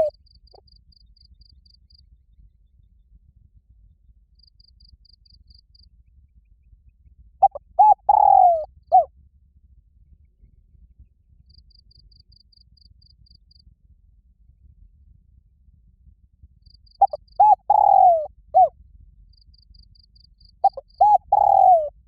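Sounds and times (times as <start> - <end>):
faint insect chirps: 0.0 - 2.4, 4.3 - 5.9, 11.4 - 13.7, 16.6 - 18.7, 19.3 - 21.9
dove cooing: 7.4 - 9.1, 17.0 - 18.7, 20.6 - 22.0.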